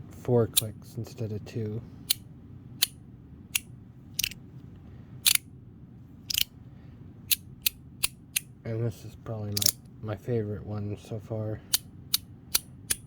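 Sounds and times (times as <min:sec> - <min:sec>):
magnetic fidget clicker clicking: 0:06.3 - 0:06.5, 0:11.7 - 0:13.0.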